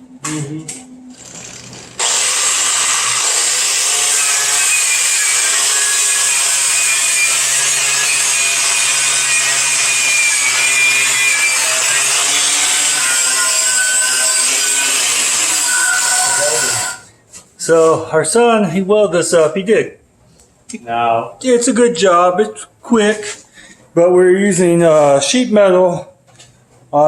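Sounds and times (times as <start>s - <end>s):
angle grinder grinding metal: 1.1s - 17.0s.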